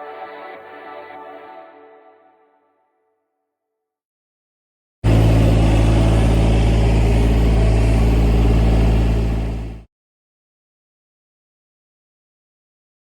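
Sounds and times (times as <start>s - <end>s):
excavator diesel engine running: 5.0s - 9.9s.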